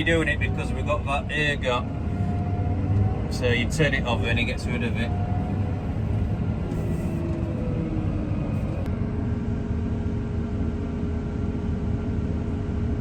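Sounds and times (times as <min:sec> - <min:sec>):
tractor engine rumbling: 0:00.0 - 0:09.6.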